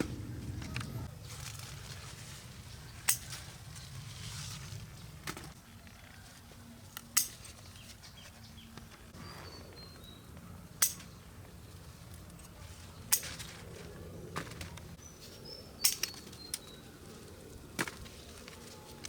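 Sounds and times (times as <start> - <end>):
low steady rumble: 0.0 - 3.0
faint bird chirp: 7.7 - 11.8.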